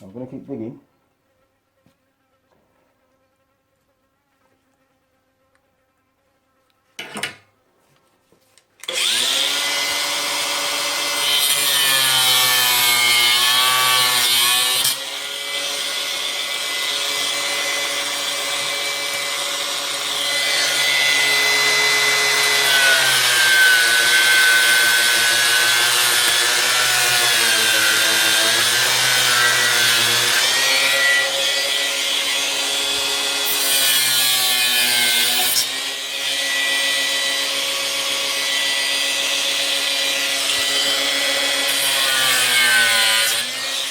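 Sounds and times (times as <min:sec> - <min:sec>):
power tool cutting plastic: 0:08.8 - 0:43.9.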